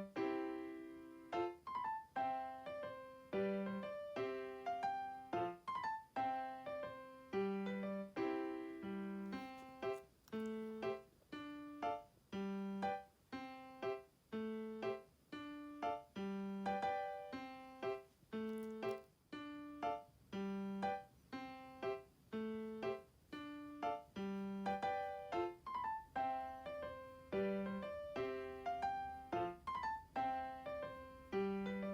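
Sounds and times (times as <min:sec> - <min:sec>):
gentle piano music: 0:00.0 - 0:31.9.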